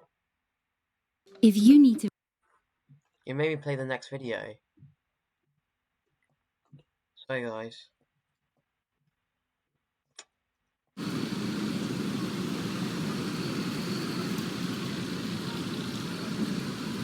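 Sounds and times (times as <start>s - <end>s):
traffic rumble: 11.0s - 17.0s.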